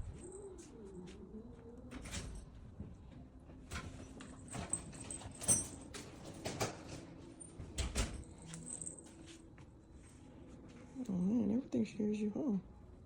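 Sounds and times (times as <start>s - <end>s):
cats knocking and scuffling: 1.9s - 9.2s.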